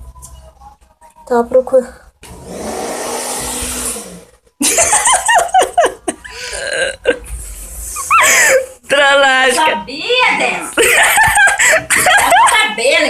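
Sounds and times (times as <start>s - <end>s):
high shrieking laughter: 8.0s - 8.7s.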